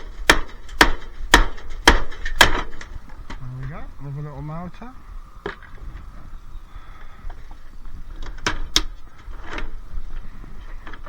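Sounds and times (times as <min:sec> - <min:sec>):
hammer cracking plastic housing: 0:00.0 - 0:03.4.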